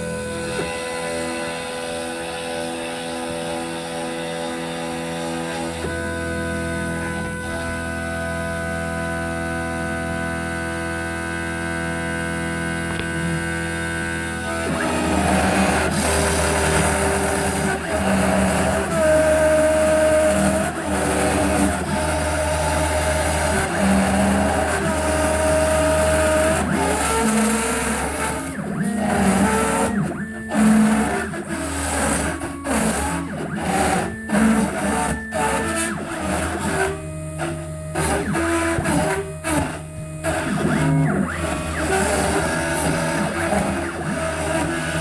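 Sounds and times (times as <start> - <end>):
router bit cutting wood: 0.0 - 45.0
router spindle whine: 0.0 - 45.0
stepper motor tones: 10.4 - 45.0.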